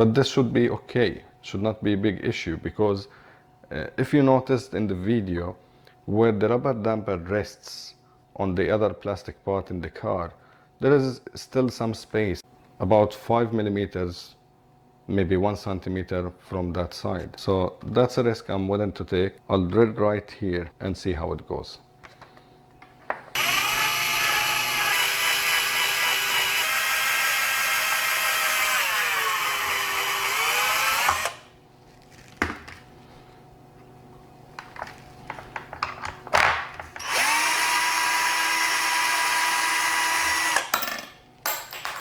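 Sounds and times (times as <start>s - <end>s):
electric drill boring plastic: 23.4s - 31.5s, 37.0s - 40.8s.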